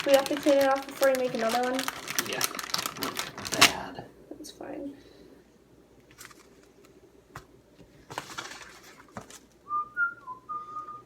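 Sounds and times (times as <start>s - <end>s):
short whistled notes: 9.7s - 11.0s.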